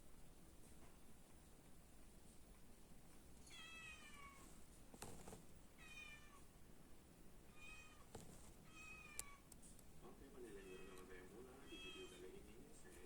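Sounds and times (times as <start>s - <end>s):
kitten meowing: 11.7s - 12.2s.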